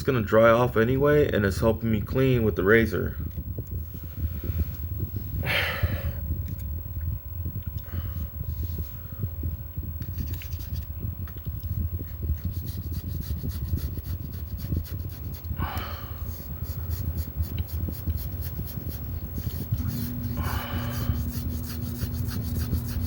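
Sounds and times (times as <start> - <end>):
razor blade scraping glass: 16.2 - 23.0.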